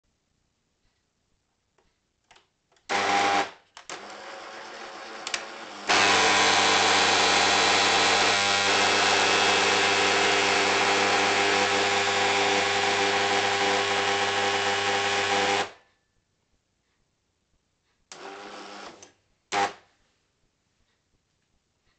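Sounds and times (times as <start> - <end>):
coffee machine running: 2.9 - 15.7.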